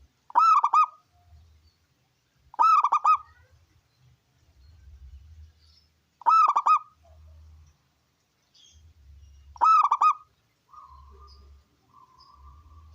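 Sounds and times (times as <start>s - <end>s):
faint low hum: 0.0s - 12.9s
dove cooing: 0.3s - 1.0s, 2.5s - 3.3s, 6.2s - 7.0s, 9.6s - 12.9s.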